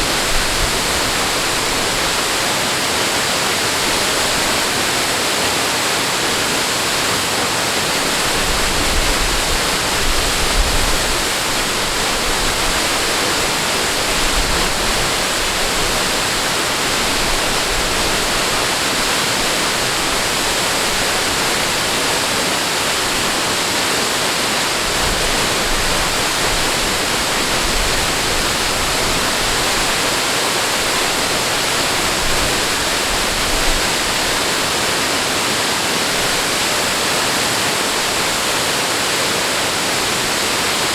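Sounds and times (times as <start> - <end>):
rushing water: 0.0 - 40.9.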